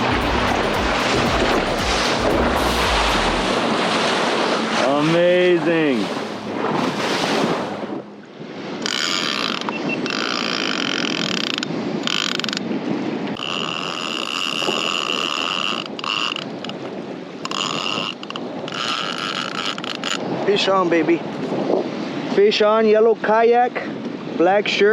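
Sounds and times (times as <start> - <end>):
waves: 0.0 - 24.9
wind: 0.0 - 24.9
fishing reel drag buzzing: 8.8 - 12.6, 13.4 - 16.8, 17.4 - 20.3.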